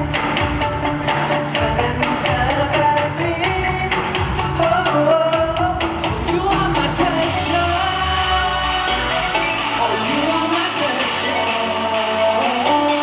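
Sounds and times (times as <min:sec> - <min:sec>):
pop song: 0:00.0 - 0:13.0.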